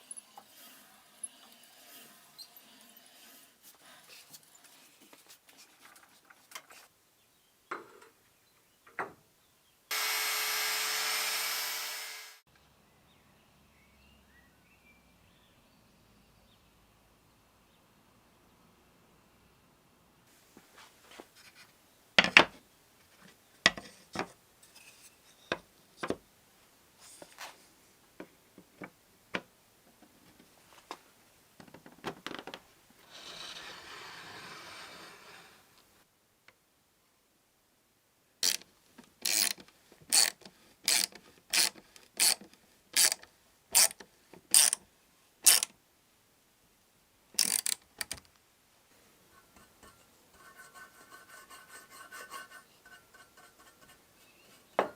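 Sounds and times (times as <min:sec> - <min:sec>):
scraping on wood: 0:49.4 - 0:54.9.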